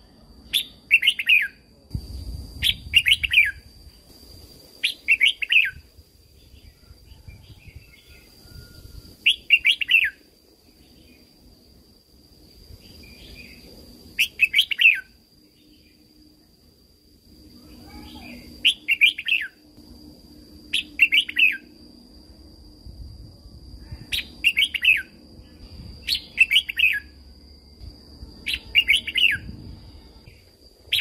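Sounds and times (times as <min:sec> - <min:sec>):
bird singing warbled phrases: 0:00.5 - 0:01.6, 0:04.8 - 0:05.8, 0:09.3 - 0:10.2, 0:14.2 - 0:16.0, 0:17.7 - 0:19.6, 0:20.7 - 0:21.7, 0:24.1 - 0:25.2, 0:26.1 - 0:27.1, 0:28.5 - 0:29.5.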